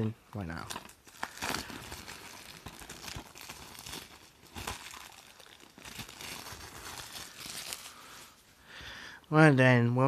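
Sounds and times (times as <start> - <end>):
plastic wrap tearing and crinkling: 0.4 - 8.5.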